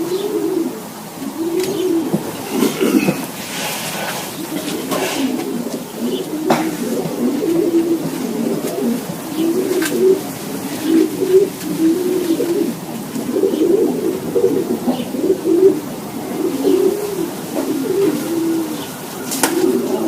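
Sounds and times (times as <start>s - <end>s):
pigeons cooing: 0.0s - 20.0s.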